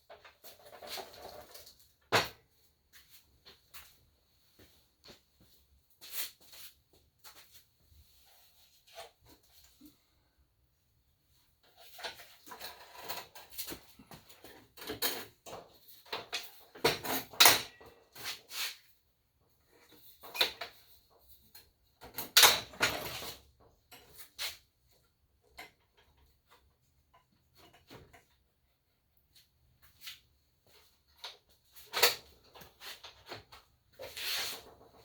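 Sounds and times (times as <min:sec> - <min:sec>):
saw stand frame clicks and rattles: 0:11.8 - 0:17.9, 0:21.6 - 0:23.4, 0:31.2 - 0:33.6.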